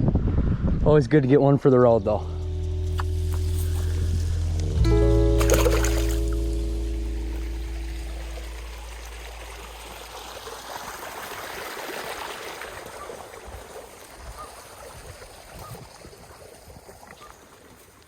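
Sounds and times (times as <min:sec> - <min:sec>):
water rushing over spillway: 0:05.4 - 0:18.0.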